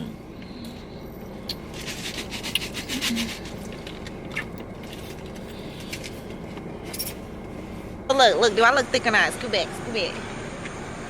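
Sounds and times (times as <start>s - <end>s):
low steady hum: 0.0s - 11.0s
rubbing and rustling scrapes: 1.7s - 4.2s.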